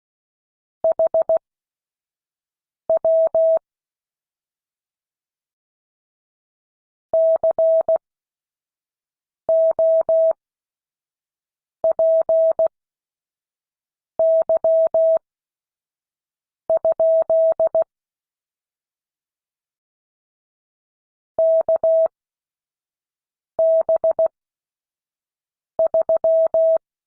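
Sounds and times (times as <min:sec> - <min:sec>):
morse code beeps: 0:21.4 - 0:22.1, 0:25.9 - 0:26.8.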